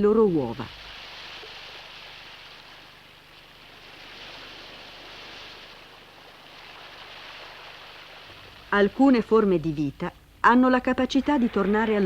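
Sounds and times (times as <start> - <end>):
waves washing on a beach: 0.5 - 9.1.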